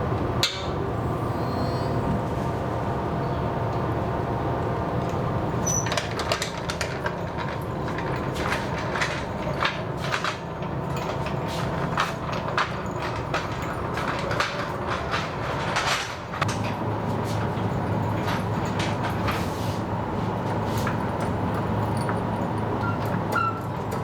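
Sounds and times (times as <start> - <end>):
clicks and knocks on metal and wood: 5.7 - 16.8.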